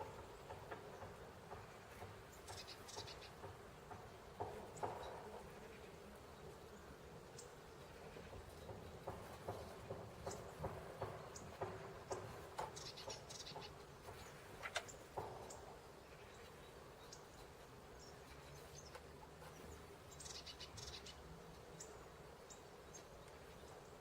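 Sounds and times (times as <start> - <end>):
small birds chirping faintly: 0.0 - 24.0.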